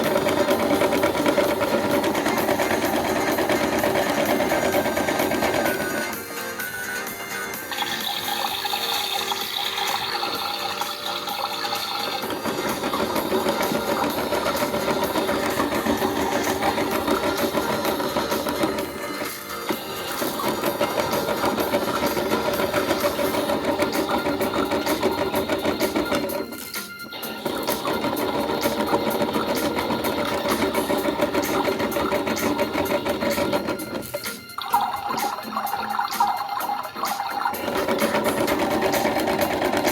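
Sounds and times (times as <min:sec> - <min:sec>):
toy washing machine motor whirring: 0:00.0 - 0:39.9
water sound: 0:34.0 - 0:39.1.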